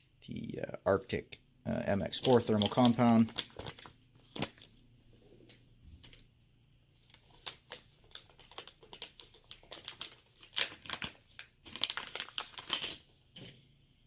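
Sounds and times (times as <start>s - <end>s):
plastic packaging crinkling: 2.0s - 4.8s, 7.0s - 13.1s.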